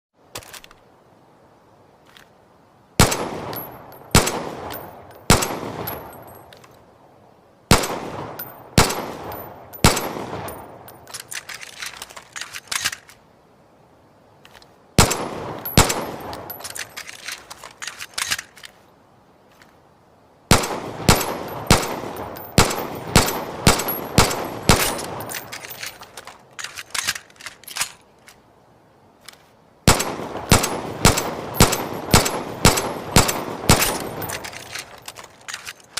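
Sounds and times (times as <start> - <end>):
pistol shots echoing: 3.0 - 6.1, 7.7 - 10.7, 15.0 - 16.4, 20.5 - 25.8, 29.9 - 34.6.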